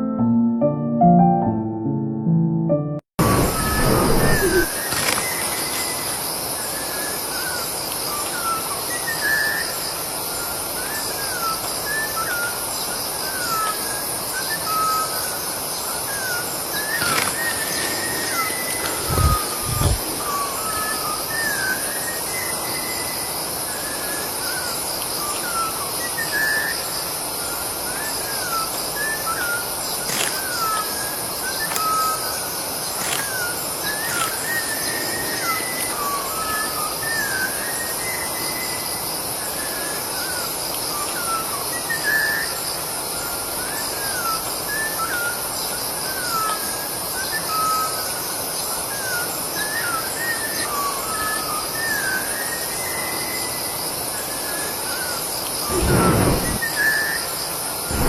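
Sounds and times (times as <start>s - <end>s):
insects droning: 3.2s - 58.0s
birds whistling calls: 13.3s - 26.8s, 27.6s - 38.8s.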